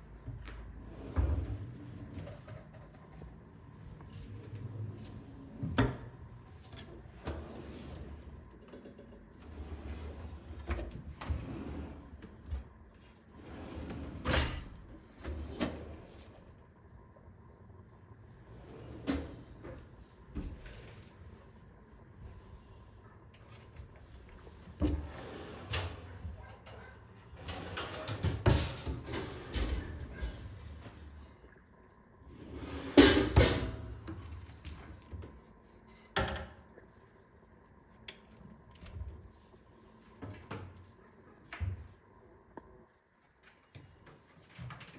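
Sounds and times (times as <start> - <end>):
kitchen drawers sliding and knocking: 0.9 - 2.7, 4.2 - 8.4, 24.5 - 31.1, 32.3 - 34.6
drawer sliding: 13.4 - 16.4, 24.8 - 26.4, 27.4 - 31.0.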